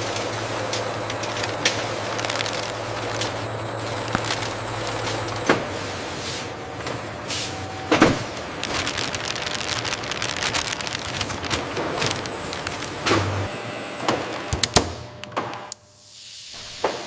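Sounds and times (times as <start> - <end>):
machinery rattling and clicking: 0.0 - 5.7, 6.8 - 13.5
machinery hum: 0.0 - 16.2.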